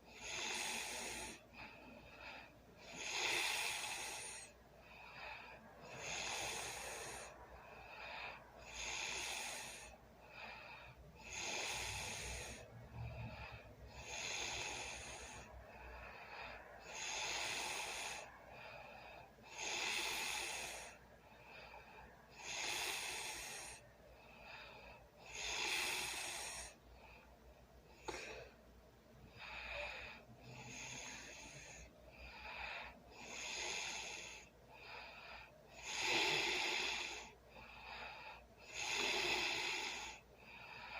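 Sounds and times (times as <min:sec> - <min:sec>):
person snoring: 0:00.1 - 0:01.4, 0:02.0 - 0:18.8, 0:19.4 - 0:21.0, 0:21.6 - 0:23.8, 0:24.5 - 0:26.8, 0:28.0 - 0:28.5, 0:29.3 - 0:40.2.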